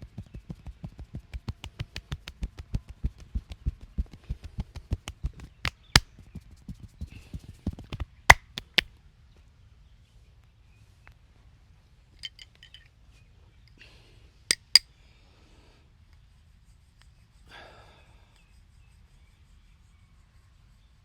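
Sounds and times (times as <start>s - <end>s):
sharp hand smacks: 1.3s - 2.6s, 5.7s - 6.0s, 8.3s - 8.8s, 14.5s - 14.8s
hands rustling on skin: 1.3s - 3.3s, 8.3s - 8.8s
light hand taps: 1.3s - 3.6s, 7.9s - 8.8s, 14.5s - 14.8s.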